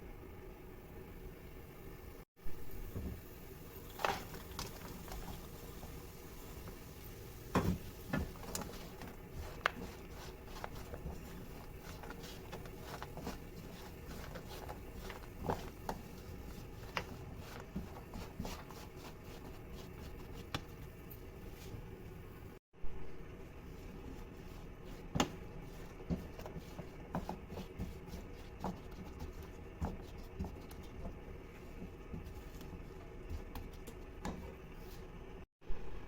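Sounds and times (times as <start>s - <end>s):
steady background hum: 0.0s - 36.0s
kitchen taps and scrapes: 7.5s - 11.3s.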